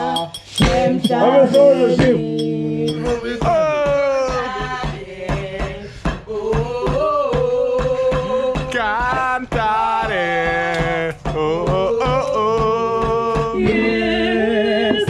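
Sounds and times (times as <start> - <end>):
short percussive ticks: 0.0 - 3.4
men singing long held notes: 0.0 - 15.0.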